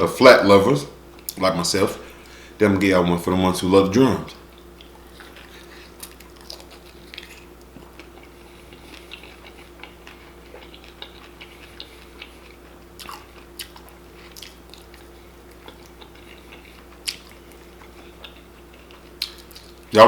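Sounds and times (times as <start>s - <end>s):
steady low hum: 0.0s - 20.0s
wet chewing and crunching: 4.3s - 19.9s.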